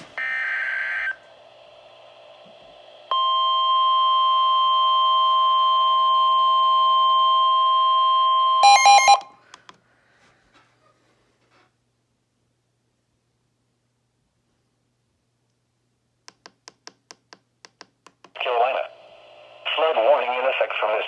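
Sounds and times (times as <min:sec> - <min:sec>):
emergency alert tone: 0:03.1 - 0:09.4.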